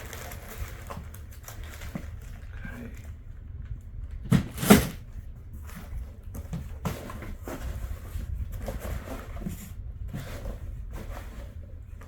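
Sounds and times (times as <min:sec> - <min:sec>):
packing peanuts rustling: 0:00.0 - 0:03.1.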